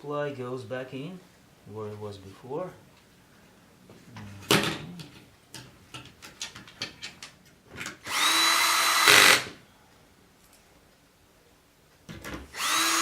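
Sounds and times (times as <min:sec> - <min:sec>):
power screwdriver running: 0:08.0 - 0:09.5, 0:12.5 - 0:13.0.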